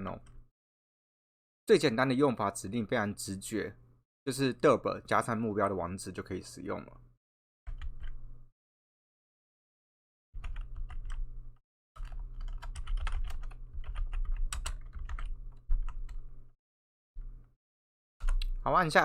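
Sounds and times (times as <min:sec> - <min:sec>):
typing on computer keyboard: 0:07.7 - 0:08.2, 0:10.4 - 0:11.2, 0:12.0 - 0:16.2.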